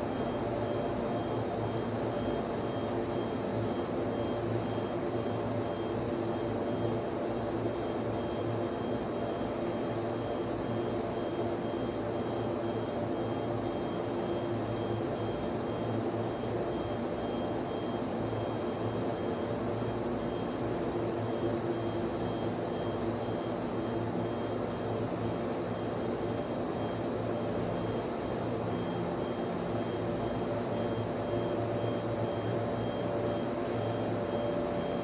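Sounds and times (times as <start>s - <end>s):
cooling fans droning: 0.0s - 35.0s.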